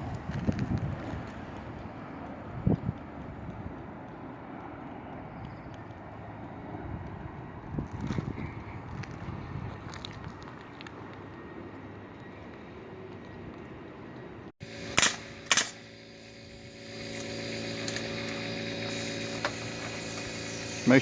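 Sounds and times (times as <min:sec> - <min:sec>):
wind on microphone: 0:00.0 - 0:10.5
machine hum: 0:14.6 - 0:21.0
nail gun shots: 0:14.8 - 0:15.9.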